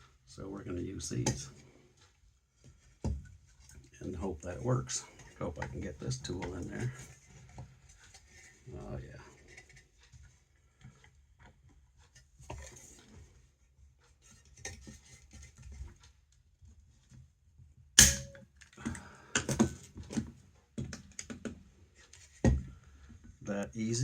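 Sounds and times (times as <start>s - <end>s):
metal mandrel clinking: 18.0s - 18.4s
rivet mandrel snapping: 18.0s - 18.4s.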